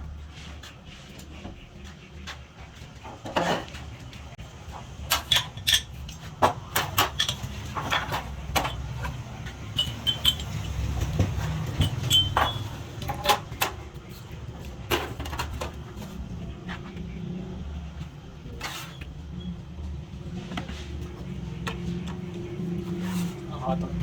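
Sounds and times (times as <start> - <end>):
small hard parts clicking: 4.8 - 15.8.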